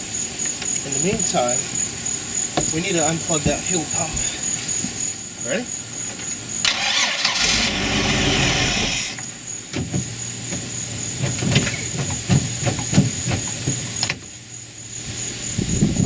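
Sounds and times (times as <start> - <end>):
engine cranking on starter: 6.6 - 9.2
loud hiss: 6.6 - 9.4.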